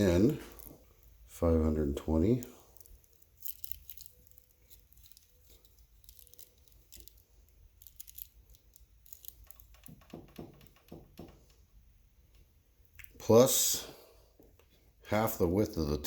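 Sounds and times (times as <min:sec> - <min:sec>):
small clicks and ticks: 0:02.3 - 0:11.4
soft knocks: 0:09.8 - 0:11.6.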